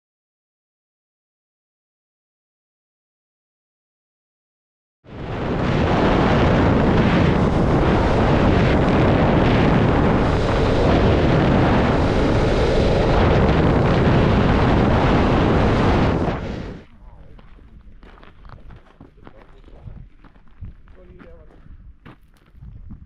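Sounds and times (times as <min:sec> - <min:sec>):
wind buffeting microphone: 0:05.1 - 0:23.0.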